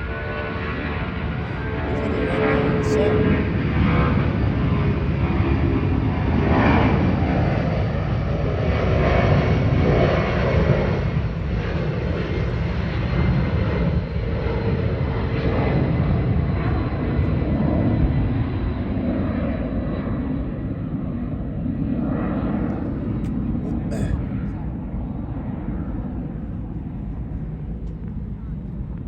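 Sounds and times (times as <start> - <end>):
jet engines rumbling at takeoff: 0.0 - 29.0.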